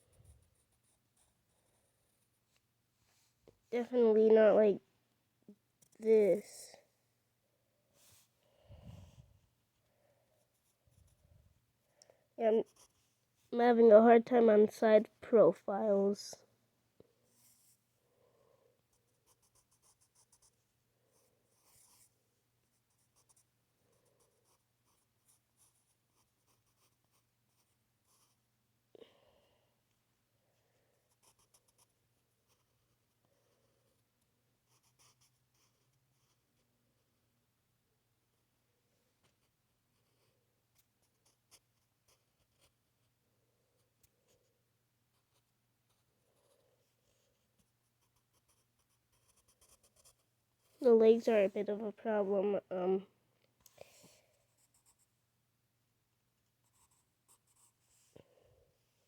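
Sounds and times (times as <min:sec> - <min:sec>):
pencil scratching strokes: 0:12.6 - 0:13.5, 0:18.9 - 0:28.5, 0:31.1 - 0:33.2, 0:45.1 - 0:50.8, 0:56.6 - 0:58.2.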